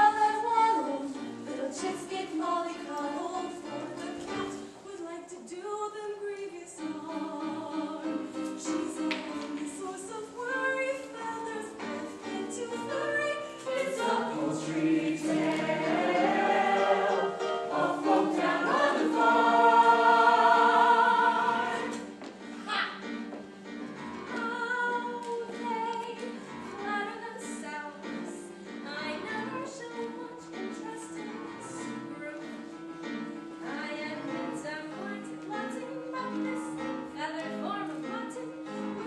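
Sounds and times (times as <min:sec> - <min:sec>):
ensemble of voices singing: 0:00.0 - 0:04.8, 0:07.2 - 0:22.2
musical accompaniment: 0:00.0 - 0:39.0.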